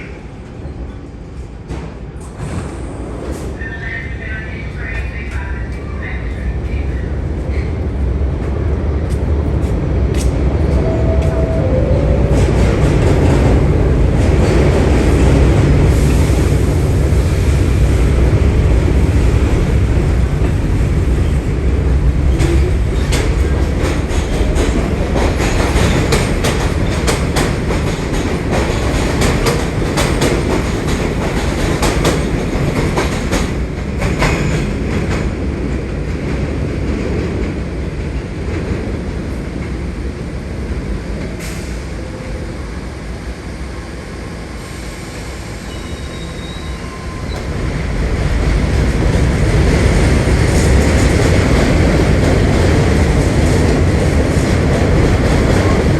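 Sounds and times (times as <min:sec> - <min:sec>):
subway train rumble: 0:00.0 - 0:55.9
wheels clacking over rail joints: 0:22.2 - 0:35.3.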